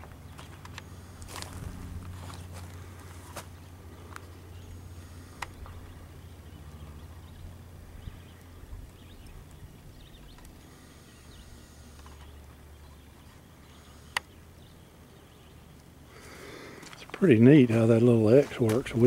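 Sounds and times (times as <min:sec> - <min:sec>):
low rumble: 0:01.0 - 0:10.4
faint bird chirps: 0:03.6 - 0:15.8.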